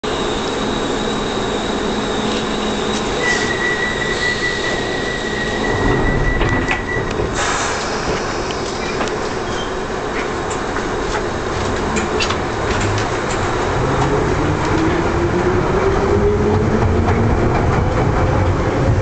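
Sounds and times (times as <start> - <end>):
train rumbling through tunnel: 0.0 - 19.0
high wheel squeal: 0.2 - 9.8
rush of hiss: 7.3 - 8.8.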